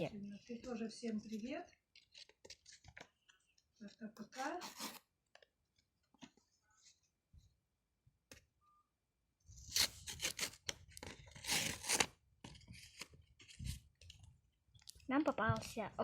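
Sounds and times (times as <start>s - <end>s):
paper ripping and rustling: 4.4s - 5.0s, 9.6s - 13.6s.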